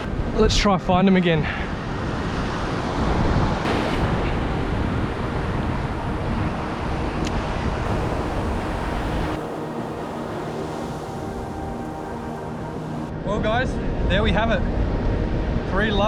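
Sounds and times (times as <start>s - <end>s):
surf washing on beach: 7.8s - 13.1s
faint steady hum: 7.8s - 15.3s.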